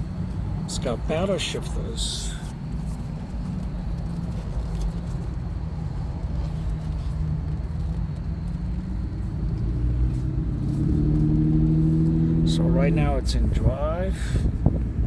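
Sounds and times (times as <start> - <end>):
car engine running: 0.0 - 15.0.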